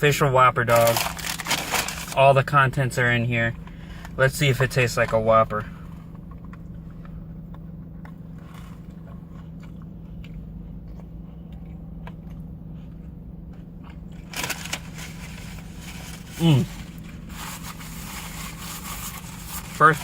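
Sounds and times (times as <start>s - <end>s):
car engine idling: 0.0s - 20.0s
crunchy rustle: 0.7s - 2.2s, 13.8s - 20.0s
person chewing food: 5.9s - 14.3s.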